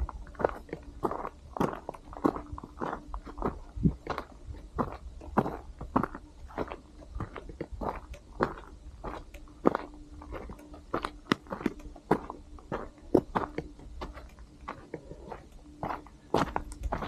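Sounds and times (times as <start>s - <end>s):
footsteps crunching on gravel: 0.0s - 17.0s.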